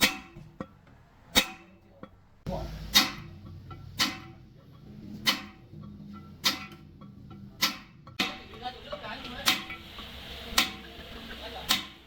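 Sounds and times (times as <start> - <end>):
hammer striking steel: 0.0 - 0.6, 1.3 - 2.2, 2.8 - 4.5, 5.2 - 9.8, 10.5 - 12.0.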